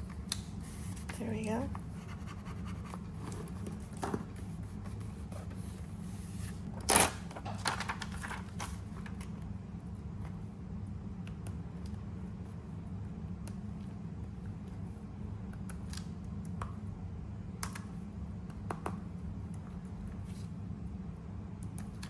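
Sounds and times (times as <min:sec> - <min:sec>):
steady low hum: 0:00.0 - 0:22.0
paper rustling: 0:07.4 - 0:09.0.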